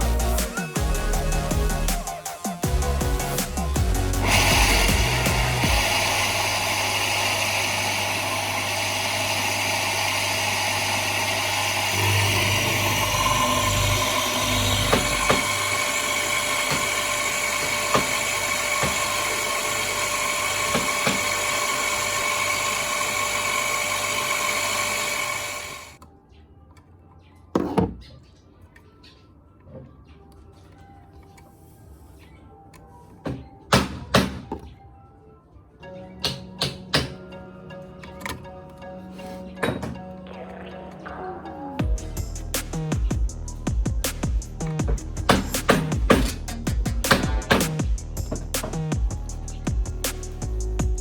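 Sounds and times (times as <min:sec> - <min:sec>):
electric motor humming: 0:00.0 - 0:26.0.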